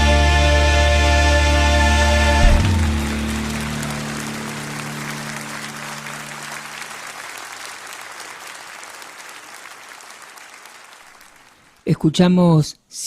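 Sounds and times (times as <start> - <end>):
final song chord ringing: 0.0 - 7.5
audience applauding: 2.4 - 11.8.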